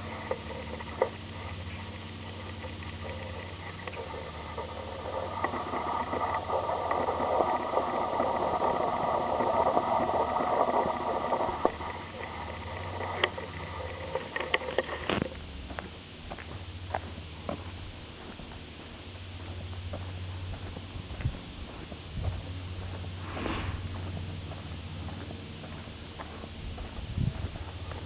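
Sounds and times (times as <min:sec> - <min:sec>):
light footsteps: 0:12.9 - 0:28.0.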